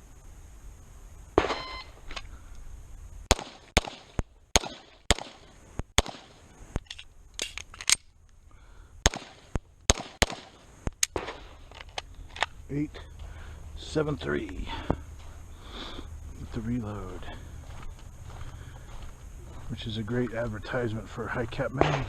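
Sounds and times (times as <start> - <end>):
shot timer beep: 1.5 - 1.9
pistol firing rapid shots: 3.3 - 6.4, 9.0 - 11.3.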